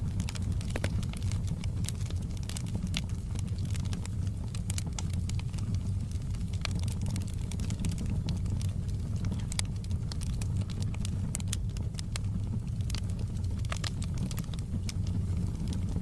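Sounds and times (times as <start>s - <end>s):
fire snapping and popping: 0.0s - 16.0s
steady low rumble: 0.0s - 16.0s
wood fire crackling: 0.0s - 16.0s.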